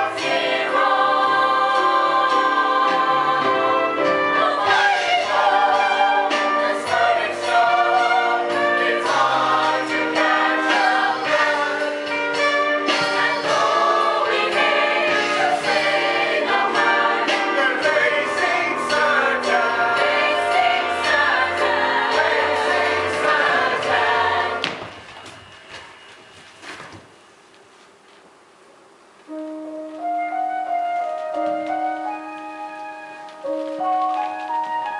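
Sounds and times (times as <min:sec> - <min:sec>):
chorus singing show tune: 0:00.0 - 0:24.8.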